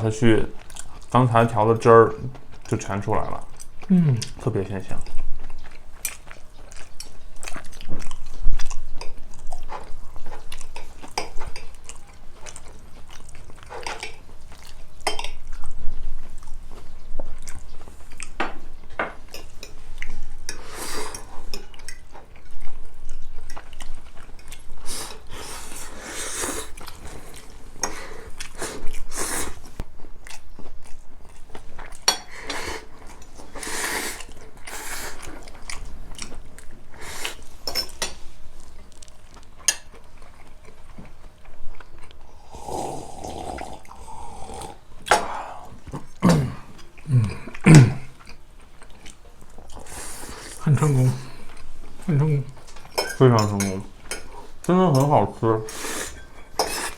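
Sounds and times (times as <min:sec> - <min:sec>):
person chewing crunchy food: 0:00.6 - 0:01.1, 0:02.2 - 0:53.0, 0:55.7 - 0:56.9
utensils clinking on a dish: 0:52.7 - 0:54.3.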